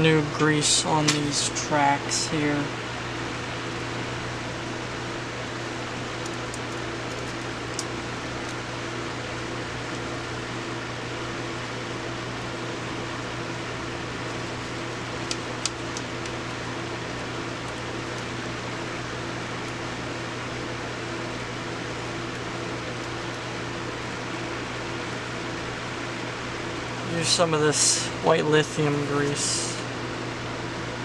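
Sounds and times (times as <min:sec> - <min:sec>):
fan-like whirring hiss: 0:00.0 - 0:31.0.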